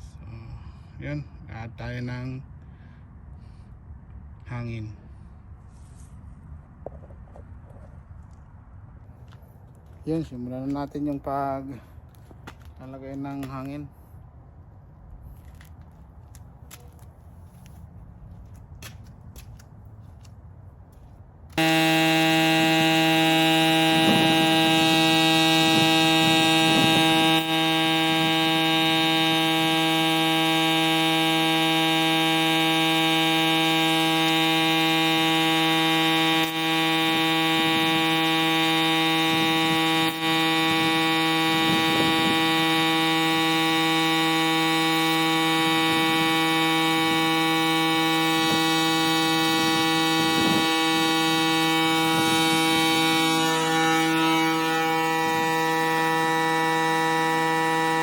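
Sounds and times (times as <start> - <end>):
air compressor buzzing drone: 21.5 - 58.0.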